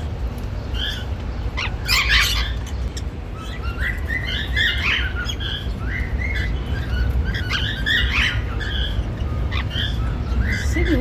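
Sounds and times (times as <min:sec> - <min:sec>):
cockatiels chirping and warbling: 0:00.4 - 0:11.0.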